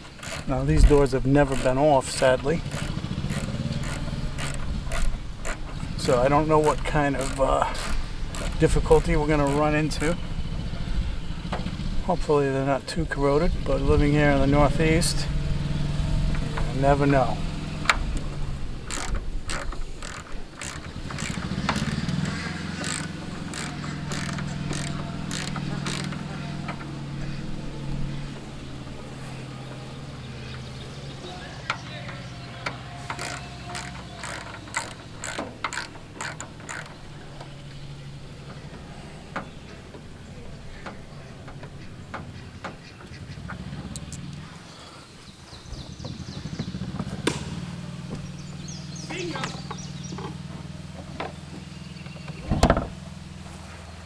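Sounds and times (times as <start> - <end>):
ratchet wrench clicking: 0.0 - 11.0, 16.2 - 27.0, 31.6 - 37.6.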